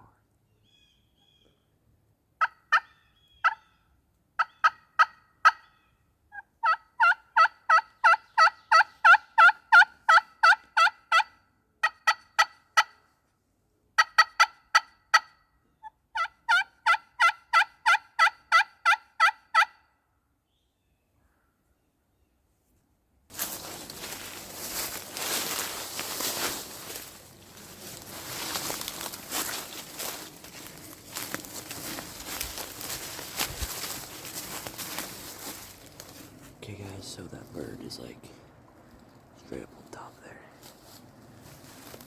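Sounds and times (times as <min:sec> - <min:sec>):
turkey call yelps: 0:02.4 - 0:03.8, 0:04.4 - 0:13.0, 0:14.0 - 0:19.9.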